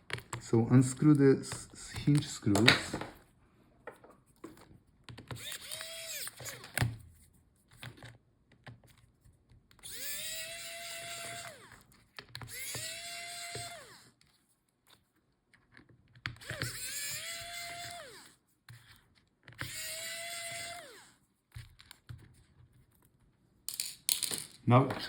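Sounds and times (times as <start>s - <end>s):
electric screwdriver motor whirring: 5.3s - 6.9s, 9.8s - 14.1s, 16.3s - 18.4s, 19.5s - 21.2s.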